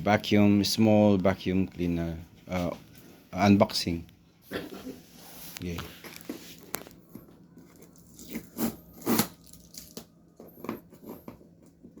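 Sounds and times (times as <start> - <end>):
cardboard packaging rustling: 5.5 - 12.0.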